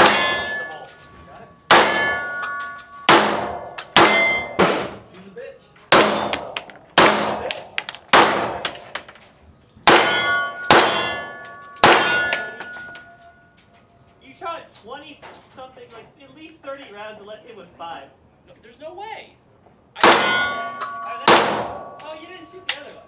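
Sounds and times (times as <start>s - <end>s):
steel target clanging: 0.0s - 5.3s, 5.9s - 9.2s, 9.9s - 13.6s, 20.0s - 23.0s
gunshots: 3.1s - 5.0s, 5.9s - 8.9s, 9.9s - 12.6s, 20.0s - 22.0s.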